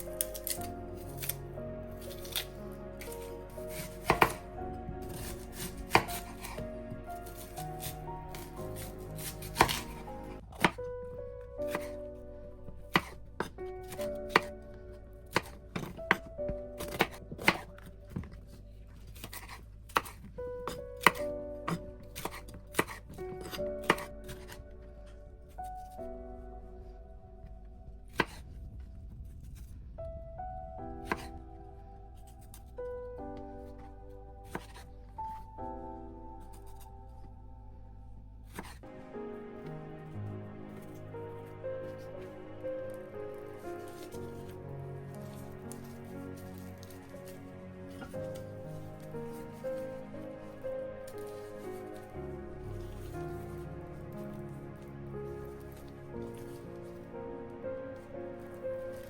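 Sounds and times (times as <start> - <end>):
soft background music: 0.0 - 59.0
knife chopping on cutting board: 0.2 - 0.6, 2.0 - 6.6, 7.2 - 10.8, 11.7 - 11.9, 12.9 - 13.2, 13.8 - 14.5, 15.3 - 17.8, 19.2 - 20.2, 21.0 - 24.6, 28.1 - 28.4, 31.0 - 31.3, 34.4 - 34.8.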